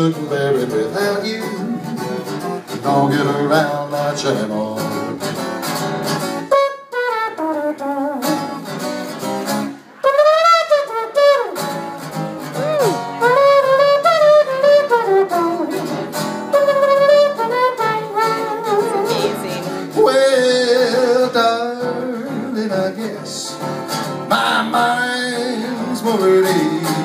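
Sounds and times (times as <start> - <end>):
acoustic guitar: 0.0 - 27.0
man imitating a trombone: 6.5 - 8.5, 10.0 - 11.6, 12.5 - 22.3.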